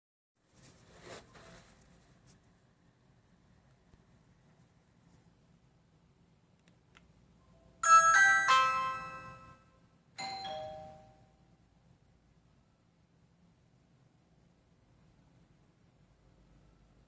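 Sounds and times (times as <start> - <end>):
electronic doorbell chime tune: 7.8 - 11.3
mechanical doorbell chime ringing: 7.8 - 11.3.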